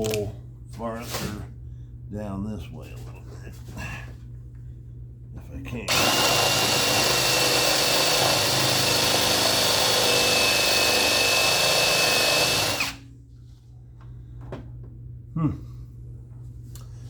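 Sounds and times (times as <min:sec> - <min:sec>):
electric drill grinding into steel: 0:05.9 - 0:13.0.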